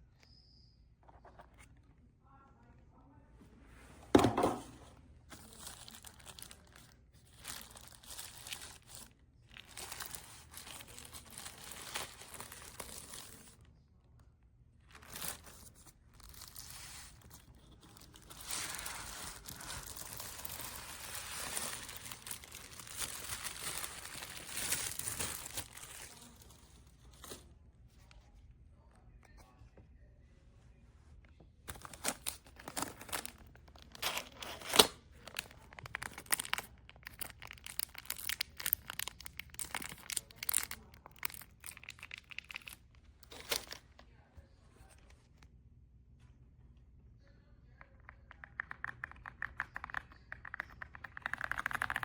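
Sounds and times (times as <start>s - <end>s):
packaging rustling and tearing: 5.3s - 13.6s, 14.9s - 27.4s, 31.7s - 43.9s.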